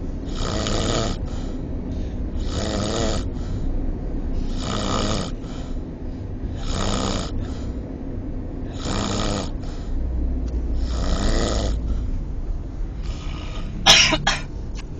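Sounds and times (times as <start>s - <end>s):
person snoring loudly: 0.3s - 1.3s, 2.4s - 3.5s, 4.6s - 5.6s, 6.6s - 7.6s, 8.7s - 9.6s, 10.8s - 11.8s.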